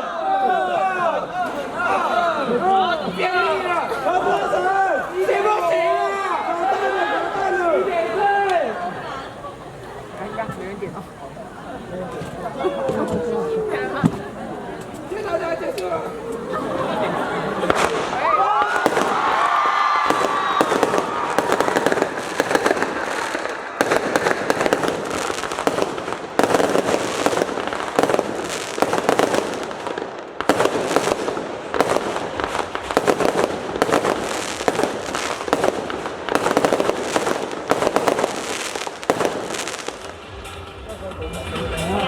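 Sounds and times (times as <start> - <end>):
fireworks crackling and popping: 17.6 - 40.7.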